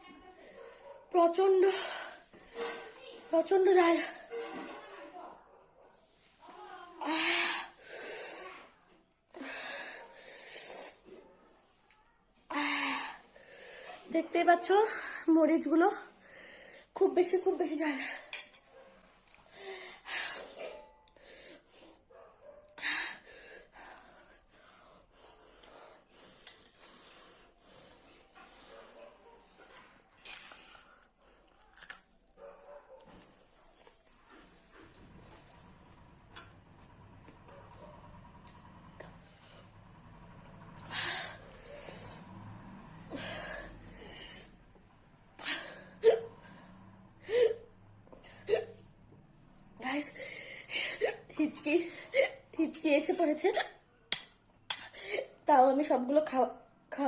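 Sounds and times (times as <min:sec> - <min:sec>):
woman breathing hard: 0:09.3 - 0:11.0, 0:22.8 - 0:28.6, 0:40.8 - 0:42.3, 0:42.9 - 0:44.6, 0:45.3 - 0:48.7, 0:50.2 - 0:52.5.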